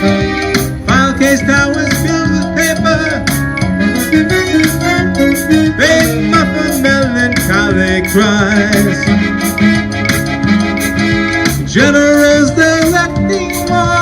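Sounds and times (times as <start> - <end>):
live band music: 0.0 - 14.0
wavering lead melody: 0.0 - 14.0
person singing: 0.8 - 3.3, 4.0 - 9.2, 11.7 - 14.0.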